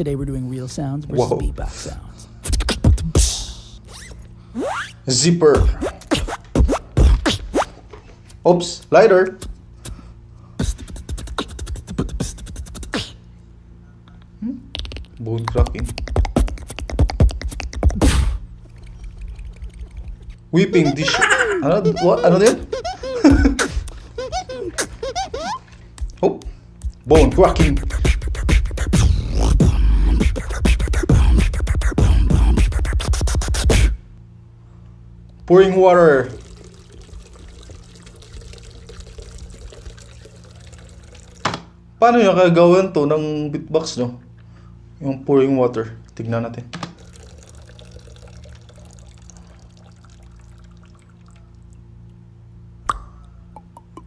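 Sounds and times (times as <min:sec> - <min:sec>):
low steady hum: 0:00.0 - 0:54.0
beatboxing mouth clicks and pops: 0:02.2 - 0:05.0, 0:05.6 - 0:08.4, 0:09.2 - 0:10.0, 0:10.6 - 0:13.3, 0:14.1 - 0:34.0, 0:52.8 - 0:54.0
water trickling with gurgles: 0:15.8 - 0:28.1, 0:35.7 - 0:41.9, 0:46.8 - 0:54.0
backing beat with heavy bass: 0:24.4 - 0:34.0.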